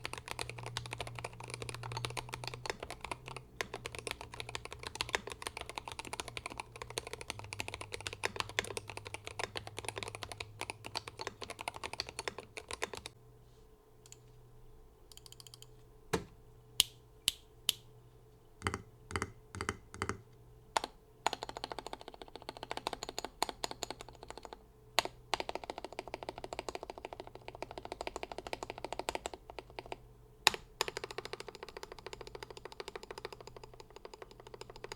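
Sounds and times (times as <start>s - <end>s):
fast keyboard typing: 0.0s - 13.2s, 20.8s - 34.9s.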